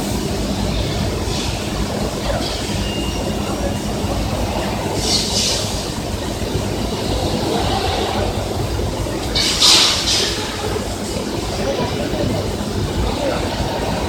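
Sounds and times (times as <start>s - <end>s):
machinery rumbling: 0.0s - 14.0s
hiss: 4.9s - 8.6s, 9.4s - 11.2s.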